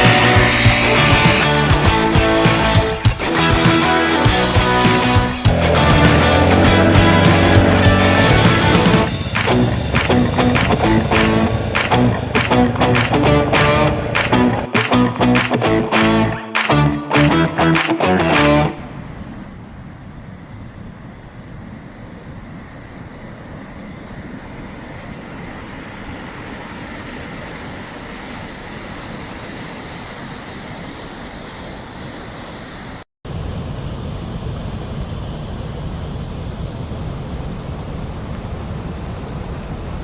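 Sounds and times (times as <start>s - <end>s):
waterfall rushing: 0.0s - 16.7s.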